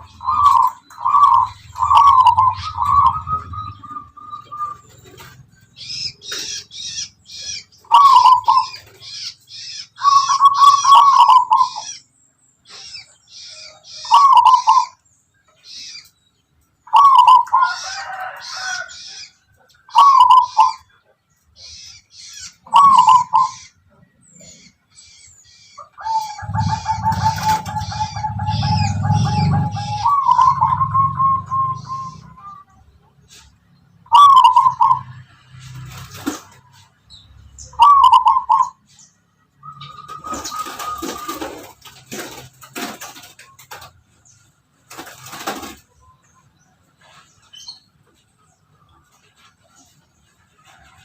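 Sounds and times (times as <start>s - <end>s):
dove cooing: 0.0s - 9.3s, 9.9s - 12.0s, 13.0s - 15.0s, 16.8s - 21.0s, 22.6s - 23.8s, 25.8s - 32.9s, 34.1s - 35.2s, 37.8s - 38.8s, 39.6s - 43.9s.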